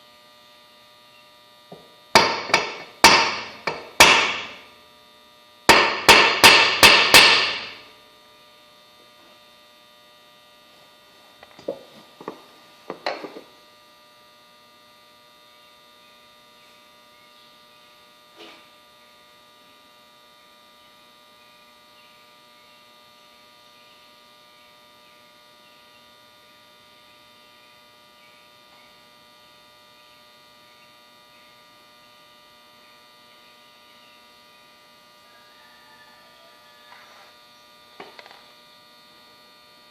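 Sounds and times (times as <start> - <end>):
electrical hum with tones: 0.0 - 39.9
hammer tapping: 5.7 - 7.7.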